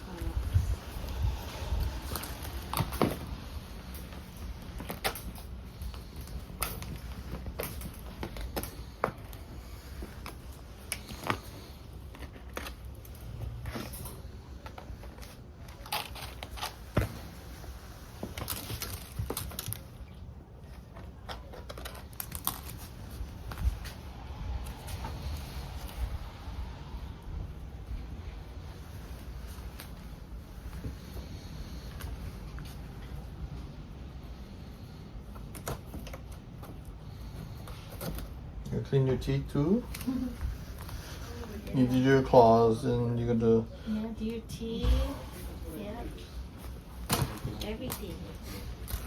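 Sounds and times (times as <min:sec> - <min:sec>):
steady low rumble: 0:00.0 - 0:20.9, 0:22.5 - 0:35.4.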